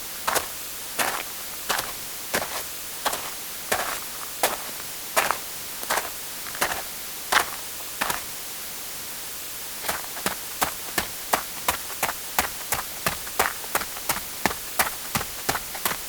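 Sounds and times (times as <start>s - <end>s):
steady hiss: 0.0s - 16.0s
footsteps walking and running: 9.8s - 16.0s.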